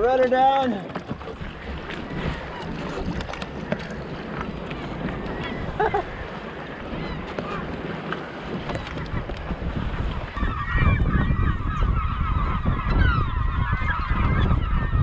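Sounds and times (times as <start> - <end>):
water noise: 0.0 - 15.0
wind: 0.0 - 15.0
flock of birds honking: 5.3 - 7.7, 10.3 - 15.0.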